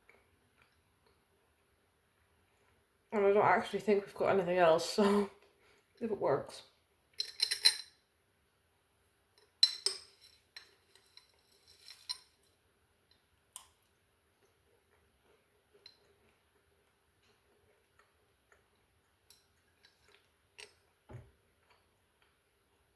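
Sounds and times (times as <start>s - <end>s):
spoon clinking against a jar: 7.2s - 8.0s, 9.6s - 12.3s.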